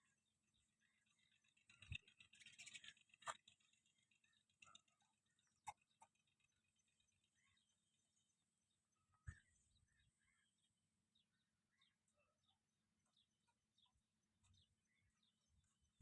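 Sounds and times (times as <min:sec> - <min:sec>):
faint clicks and knocks: 0:04.5 - 0:06.5.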